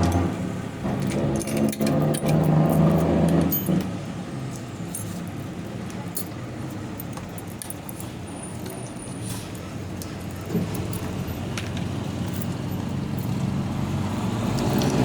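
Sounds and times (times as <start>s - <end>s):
metal parts clinking: 0.0s - 3.9s, 4.5s - 13.5s.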